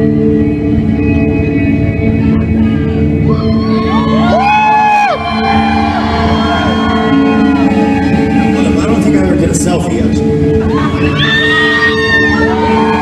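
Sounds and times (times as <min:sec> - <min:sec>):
rock band droning chord: 0:00.0 - 0:04.4.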